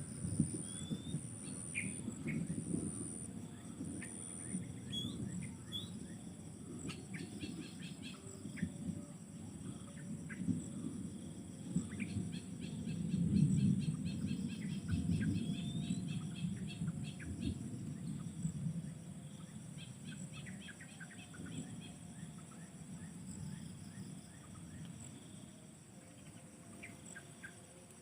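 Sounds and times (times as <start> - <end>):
high insect drone: 0.0 - 28.0.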